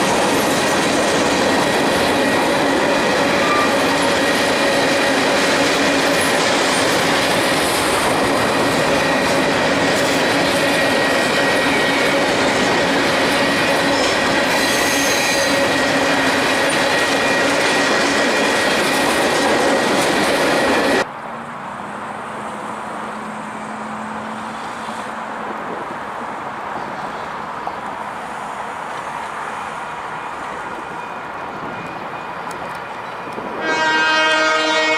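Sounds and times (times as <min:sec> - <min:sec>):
distant train rumble: 0:00.0 - 0:21.1, 0:21.9 - 0:34.9
train wheels rumbling on rail: 0:00.0 - 0:21.1, 0:21.9 - 0:34.9
wheel squeal: 0:03.1 - 0:04.7, 0:13.9 - 0:15.8.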